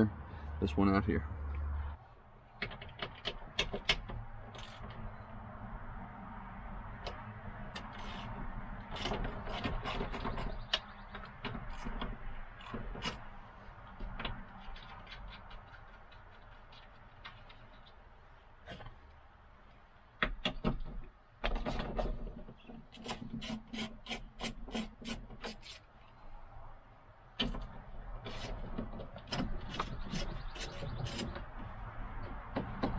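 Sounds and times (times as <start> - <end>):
small metal knocks: 28.3 - 32.9.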